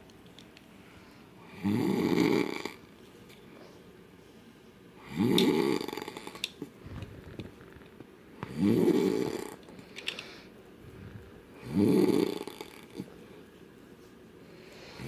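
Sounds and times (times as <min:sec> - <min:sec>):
man snoring loudly: 0:01.5 - 0:02.8, 0:05.0 - 0:06.4, 0:08.5 - 0:09.6, 0:11.6 - 0:13.0.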